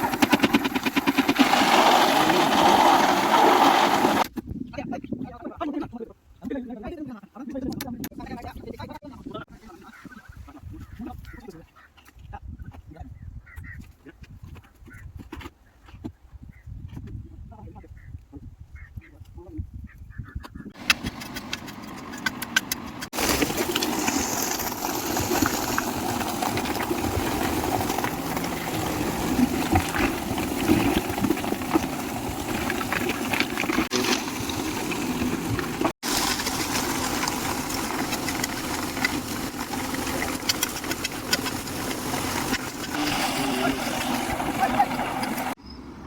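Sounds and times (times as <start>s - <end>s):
construction machinery engine running: 20.8s - 45.6s.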